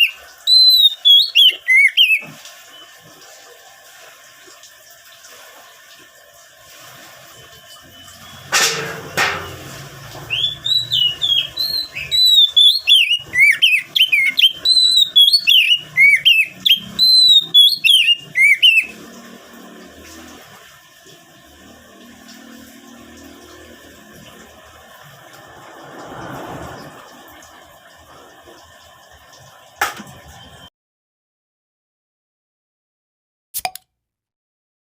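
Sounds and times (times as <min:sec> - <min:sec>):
bird singing whistled notes: 0:00.0 - 0:02.9, 0:07.6 - 0:08.5, 0:10.3 - 0:18.9.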